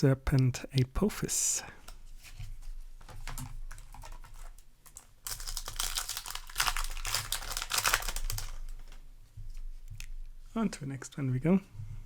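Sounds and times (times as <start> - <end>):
foil wrapper crinkling and tearing: 3.4 - 9.0.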